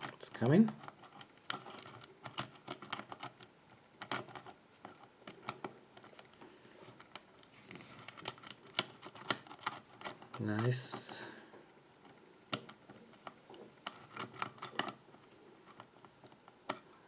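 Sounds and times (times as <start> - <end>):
lock pick metal clicks: 0.8 - 6.2, 8.1 - 10.7, 12.5 - 15.0.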